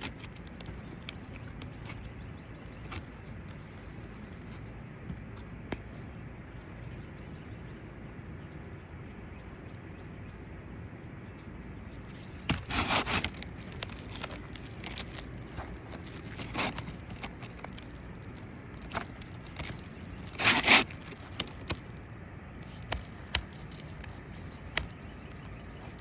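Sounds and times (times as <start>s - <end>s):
steady background noise: 0.0s - 26.0s
scraping strokes: 11.3s - 17.9s, 18.8s - 21.9s.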